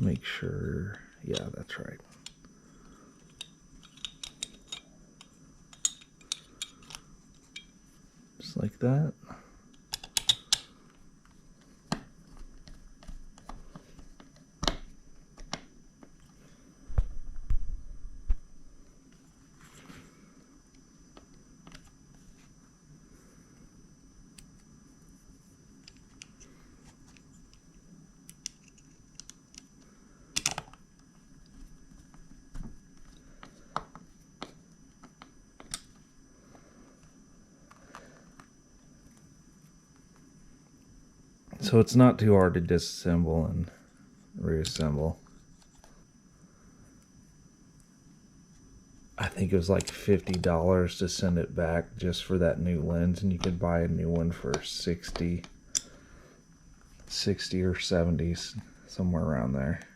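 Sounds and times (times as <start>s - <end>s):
clicks of parts being handled: 3.2s - 7.7s, 9.7s - 10.7s, 28.3s - 29.8s, 30.4s - 30.8s, 49.8s - 50.5s, 54.5s - 55.9s.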